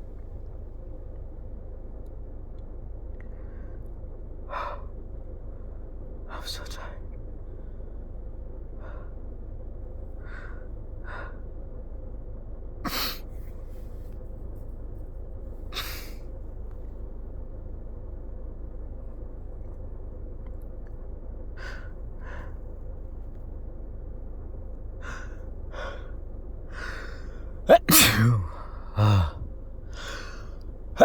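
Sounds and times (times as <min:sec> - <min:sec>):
steady low hum: 0:00.0 - 0:31.0
person sneezing: 0:12.9 - 0:13.2, 0:26.9 - 0:30.4
gasping in-breaths: 0:25.0 - 0:30.6.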